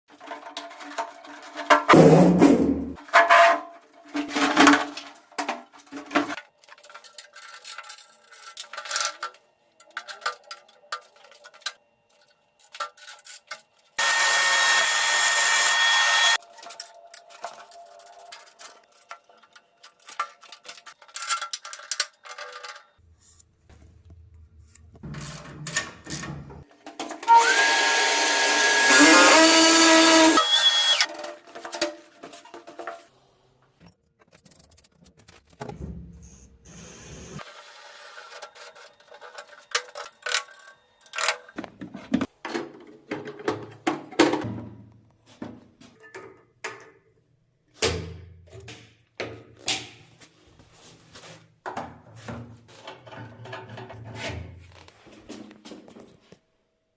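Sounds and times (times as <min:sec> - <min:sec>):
power drill running: 0:14.0 - 0:16.4, 0:27.3 - 0:31.1.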